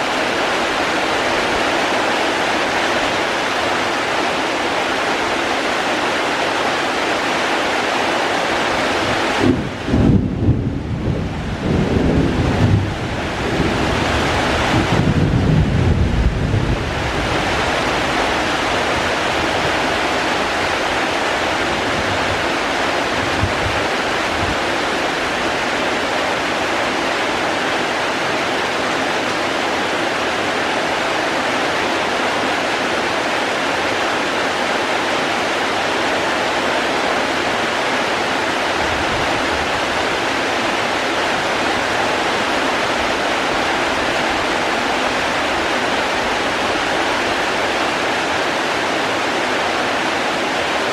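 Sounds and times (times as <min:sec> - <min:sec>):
heavy rain falling: 0:00.0 - 0:50.9
low rumbles: 0:09.4 - 0:17.6.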